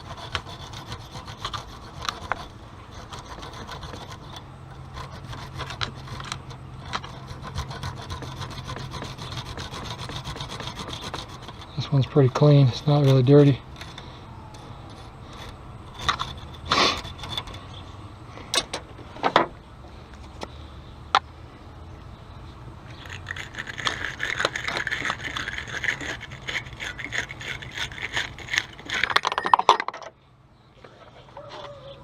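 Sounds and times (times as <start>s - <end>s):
rapid continuous scratching: 0.0s - 17.9s, 22.9s - 29.3s
tool scraping battery terminal: 0.0s - 17.9s, 22.9s - 30.1s.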